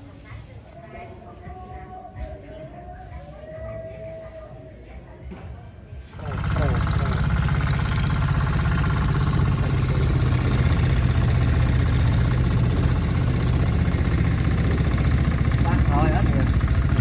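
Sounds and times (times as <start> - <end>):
engine running steadily: 6.1 - 17.0.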